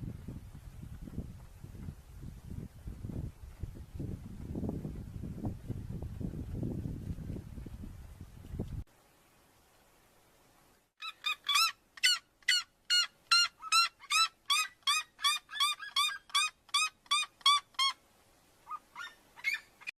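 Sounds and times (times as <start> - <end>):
bird yelping calls: 11.0 - 18.0, 18.7 - 19.9.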